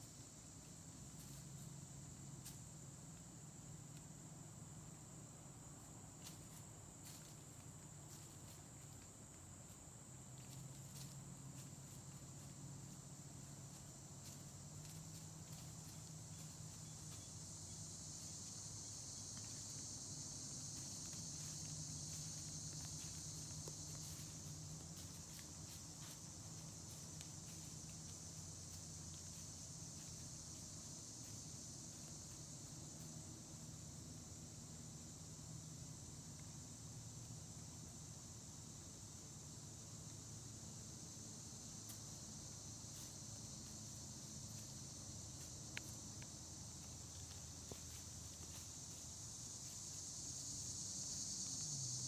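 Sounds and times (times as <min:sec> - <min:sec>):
insect chorus: 0:00.0 - 0:52.0
light ticks and crackles: 0:45.5 - 0:48.7
faint light ticks: 0:45.7 - 0:46.3.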